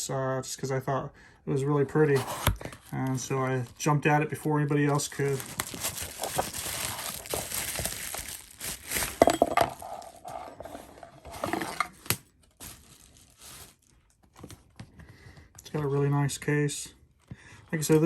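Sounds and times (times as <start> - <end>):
packaging crinkling and rustling: 2.1 - 15.0.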